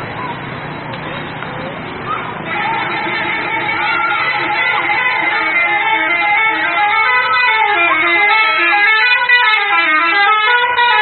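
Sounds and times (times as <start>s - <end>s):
bus musical horn melody: 2.4s - 11.0s.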